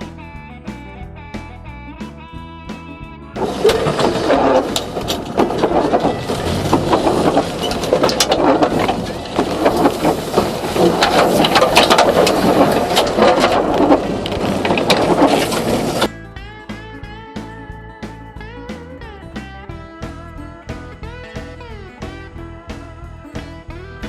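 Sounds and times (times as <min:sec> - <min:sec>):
knocks and clatters: 0:03.4 - 0:16.1
vehicle splashing through mud: 0:03.4 - 0:16.1.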